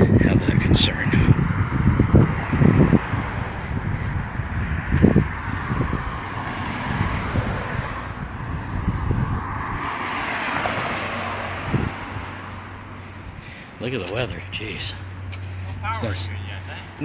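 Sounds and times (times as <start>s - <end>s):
wind on microphone: 0.0s - 13.4s
car passing: 0.0s - 17.0s.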